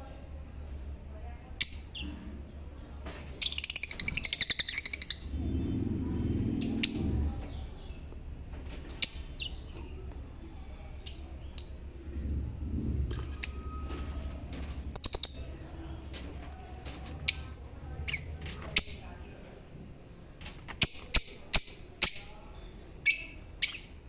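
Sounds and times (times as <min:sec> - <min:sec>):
lovebirds chattering trill: 0:03.4 - 0:10.0
low rumble: 0:05.0 - 0:19.9.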